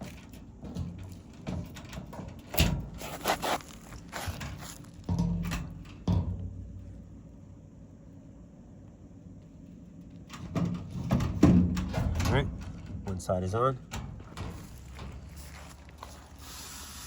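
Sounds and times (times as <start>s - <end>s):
dryer panel clunks and scraping: 0.0s - 6.6s, 10.3s - 15.5s.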